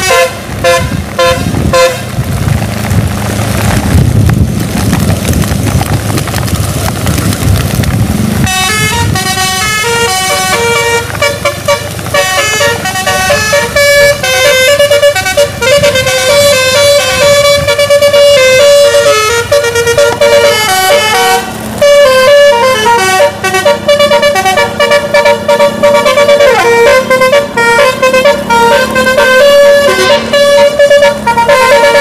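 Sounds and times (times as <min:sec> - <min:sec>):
musical air horn melody: 0:00.0 - 0:02.1, 0:08.4 - 0:32.0.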